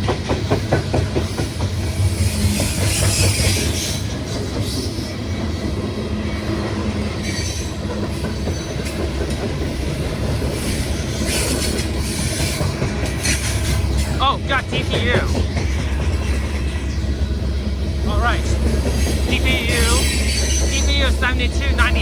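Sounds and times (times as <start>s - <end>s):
freight train rumbling past: 0.0s - 22.0s.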